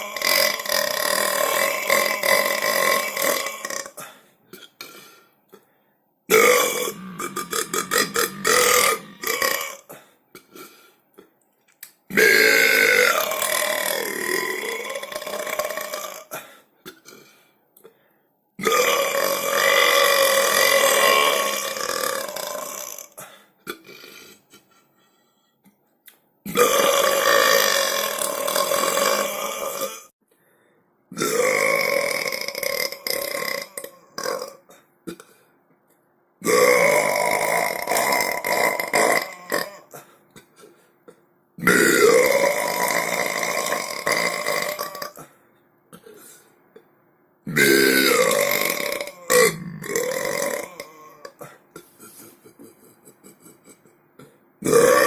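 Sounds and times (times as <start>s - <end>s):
person belching: 0.0s - 4.9s, 6.3s - 10.6s, 12.1s - 17.3s, 18.6s - 24.4s, 26.4s - 30.1s, 31.1s - 35.3s, 36.4s - 40.5s, 41.6s - 45.4s, 47.5s - 51.9s, 53.6s - 55.0s.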